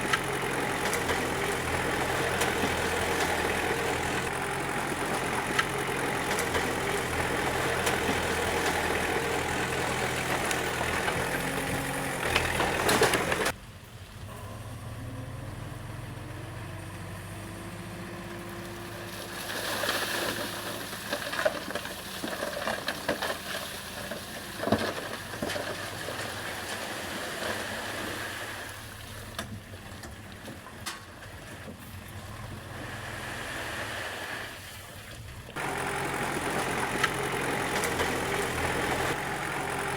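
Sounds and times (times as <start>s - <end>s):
bulldozer diesel engine running: 0.0s - 27.1s, 35.2s - 39.9s.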